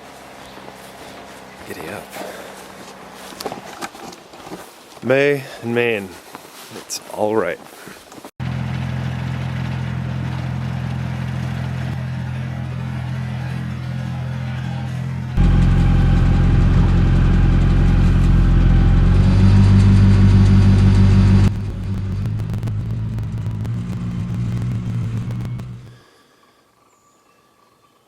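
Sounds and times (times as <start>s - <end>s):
tractor engine running: 8.4s - 26.0s.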